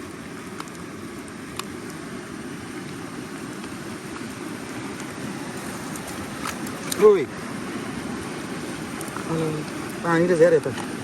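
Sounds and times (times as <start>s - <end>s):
river rushing: 0.0s - 11.0s.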